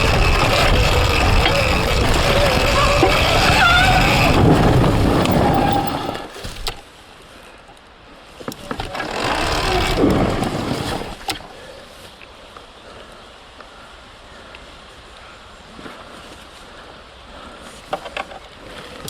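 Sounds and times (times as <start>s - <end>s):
electric dirt bike motor whine: 0.0s - 6.4s, 8.9s - 11.3s.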